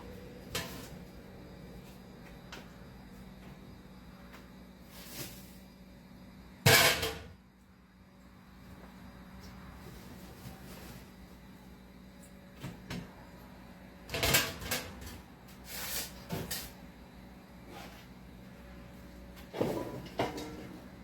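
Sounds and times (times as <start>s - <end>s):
rustle of handling: 9.8s - 11.4s
containers knocking and clunking: 19.4s - 20.8s.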